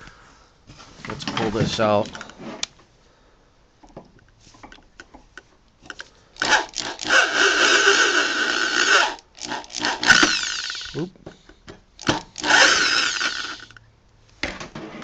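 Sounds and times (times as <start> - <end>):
power drill running: 6.4 - 11.0, 12.0 - 13.8.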